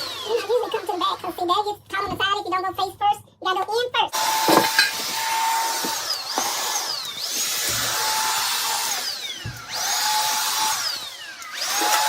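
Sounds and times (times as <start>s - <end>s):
vacuum mop suction and motor whine: 0.0s - 1.3s, 4.2s - 12.0s.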